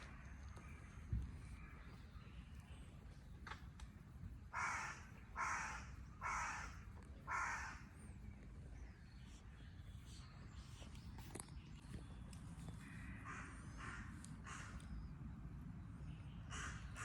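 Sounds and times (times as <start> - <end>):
crow cawing: 4.5 - 7.9, 12.8 - 14.8, 16.5 - 17.0.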